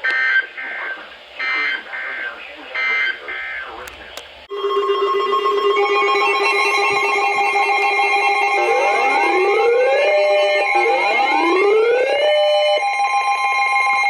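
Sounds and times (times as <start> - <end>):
weather radio alert tones: 0.0 - 4.4, 8.5 - 12.8
rising siren sweeps: 4.5 - 14.0.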